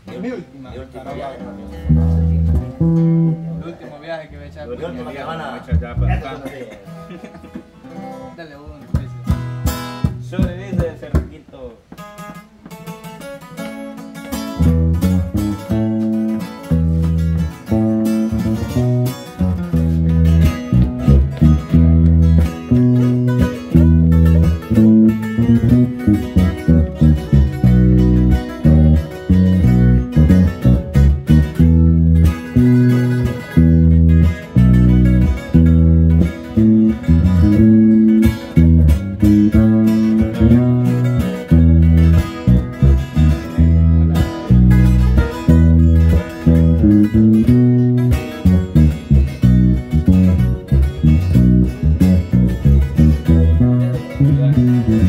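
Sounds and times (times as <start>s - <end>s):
plucked and strummed guitar: 0.0s - 55.0s
bass line held notes: 1.4s - 3.8s, 5.7s - 6.4s, 14.4s - 55.0s.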